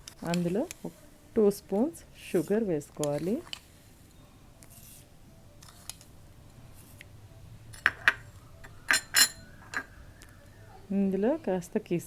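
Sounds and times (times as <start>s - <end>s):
metal spoon clinking on container: 7.7s - 9.9s.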